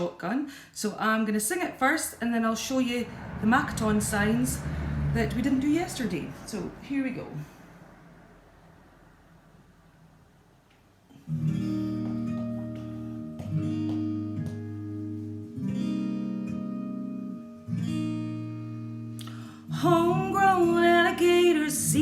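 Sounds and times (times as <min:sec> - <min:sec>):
acoustic guitar strumming: 0:11.1 - 0:22.0.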